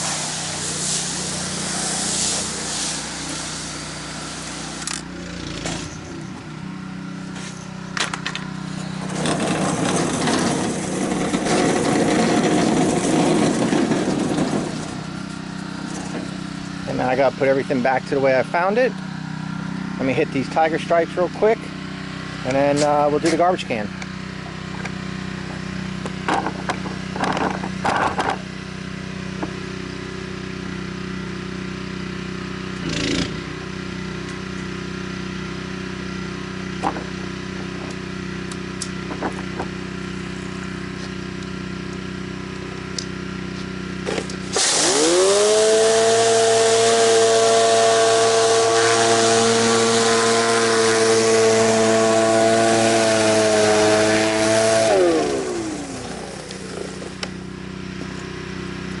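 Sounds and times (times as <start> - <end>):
high-pressure water spray hissing: 0.0 - 6.2, 44.4 - 57.2
spinning spray bar whine: 0.0 - 28.5, 32.7 - 59.0
pressure washer engine running: 0.0 - 59.0.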